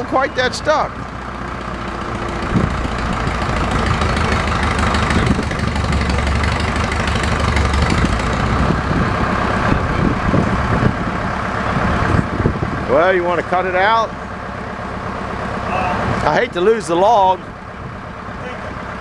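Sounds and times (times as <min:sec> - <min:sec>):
heavy engine rumbling: 0:00.0 - 0:19.0
knocks and clunks: 0:01.5 - 0:09.1.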